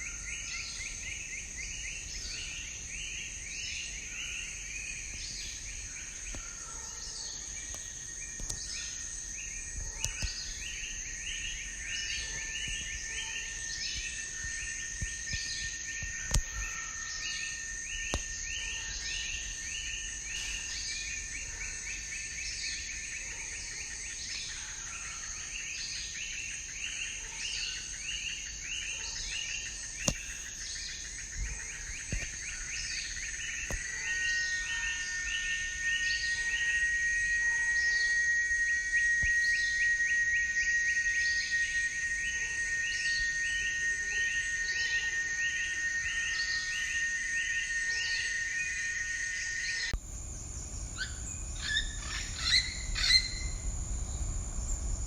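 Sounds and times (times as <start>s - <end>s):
bird calls: 0.0s - 50.0s, 50.7s - 55.0s
high insect drone: 0.0s - 55.0s
low rumble: 50.0s - 55.0s
repeated chirping calls: 51.0s - 53.7s.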